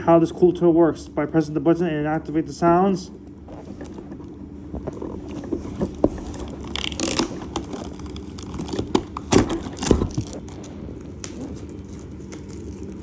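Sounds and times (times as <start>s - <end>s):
packaging crinkling: 3.2s - 13.0s
clicks and knocks handling packaging: 3.5s - 13.0s.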